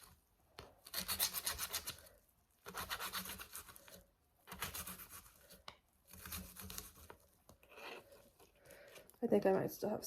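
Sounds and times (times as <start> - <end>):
knife cutting onion on board: 0.8 - 2.0, 2.6 - 7.2.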